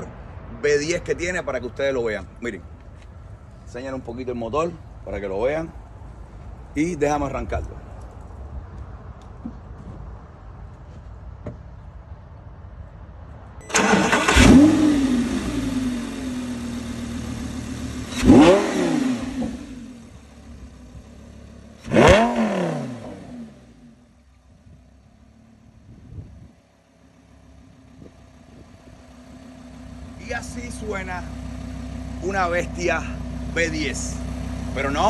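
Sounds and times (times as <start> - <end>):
car engine starting and revving: 13.6 - 26.5, 27.2 - 35.0.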